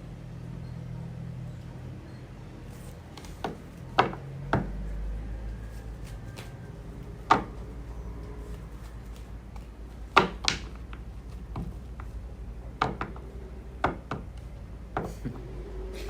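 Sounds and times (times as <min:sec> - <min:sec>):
low hum: 0:11.0 - 0:16.0.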